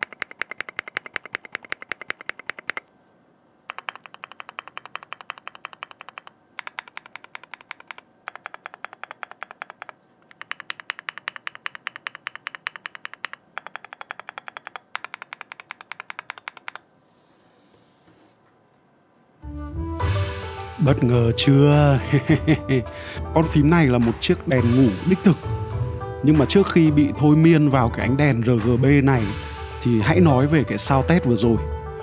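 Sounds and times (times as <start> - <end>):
fast typing on mechanical keyboard: 0.0 - 2.9, 3.7 - 16.8.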